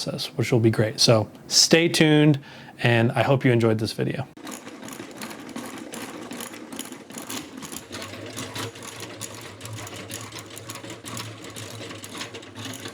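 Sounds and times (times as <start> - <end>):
small machine clattering: 4.4 - 12.9.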